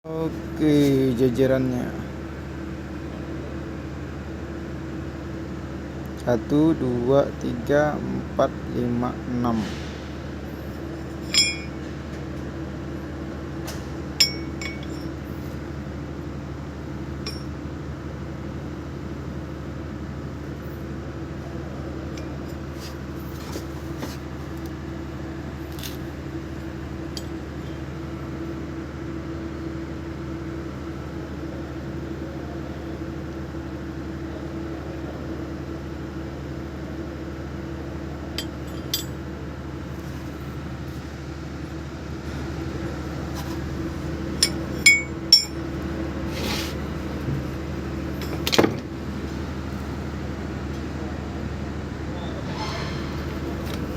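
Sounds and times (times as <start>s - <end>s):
low machine hum: 0.0s - 53.9s
metal parts clinking: 11.2s - 11.8s.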